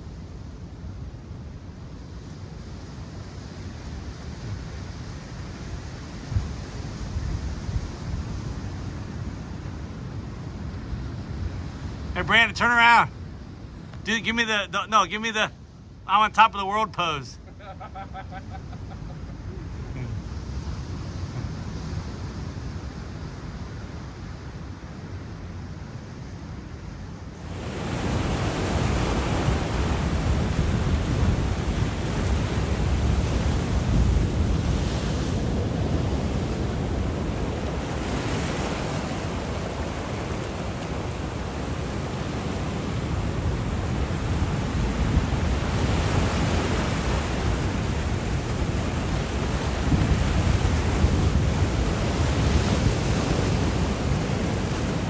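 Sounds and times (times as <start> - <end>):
waves crashing on shore: 0.0 - 25.6, 27.2 - 55.0
wind on microphone: 4.0 - 9.2, 27.4 - 55.0.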